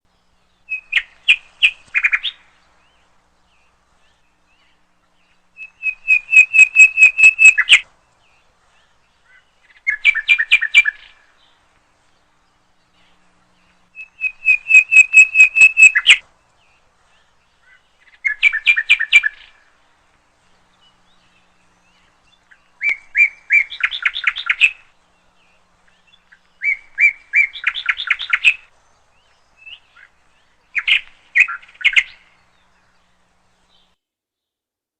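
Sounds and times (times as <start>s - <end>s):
bird chirping rapidly: 0.5s - 3.4s, 5.6s - 7.8s, 13.9s - 16.2s, 17.6s - 19.6s, 20.8s - 28.7s, 29.5s - 32.5s.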